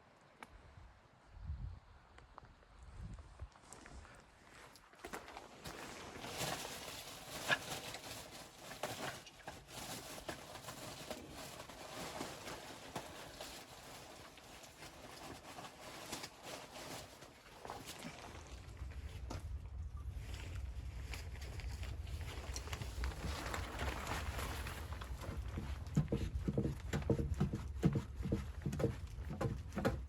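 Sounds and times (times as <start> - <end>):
crunching and knocking in snow: 20.2 - 30.0.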